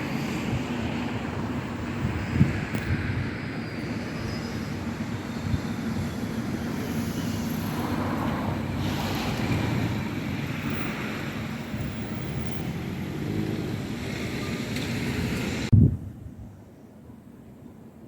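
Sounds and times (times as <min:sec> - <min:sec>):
diesel railcar low rumble: 0:00.0 - 0:18.0.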